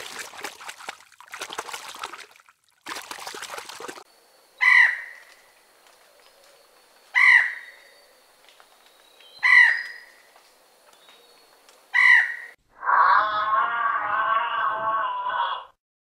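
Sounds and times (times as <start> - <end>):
large bird harsh calls: 4.6 - 5.2, 9.4 - 10.1, 12.0 - 13.5.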